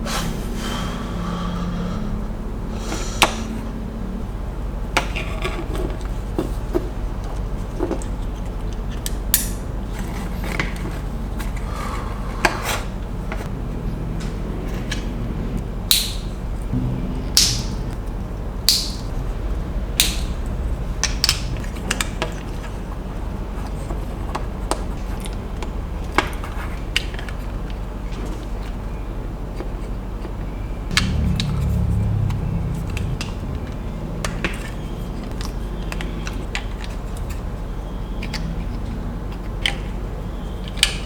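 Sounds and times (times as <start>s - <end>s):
low hum: 0.0s - 4.8s, 15.1s - 22.7s, 30.9s - 35.3s.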